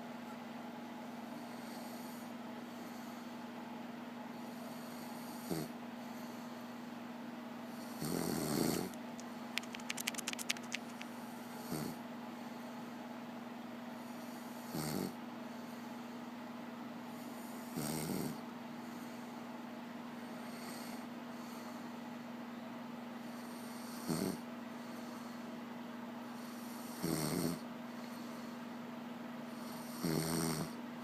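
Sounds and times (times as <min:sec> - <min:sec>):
steady low hum: 0:00.0 - 0:26.9
person snoring: 0:05.4 - 0:05.7, 0:07.8 - 0:08.9, 0:14.7 - 0:15.2, 0:26.8 - 0:27.6, 0:29.7 - 0:30.8
sharp clicks: 0:08.9 - 0:11.1.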